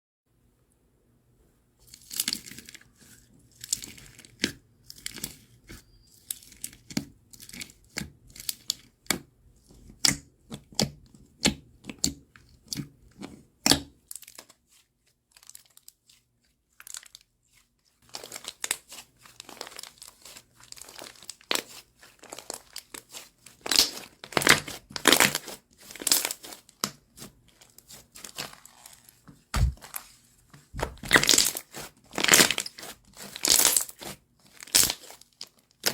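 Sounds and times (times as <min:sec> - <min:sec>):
slime crackling and popping: 0:18.1 - 0:30.0, 0:30.8 - 0:35.9.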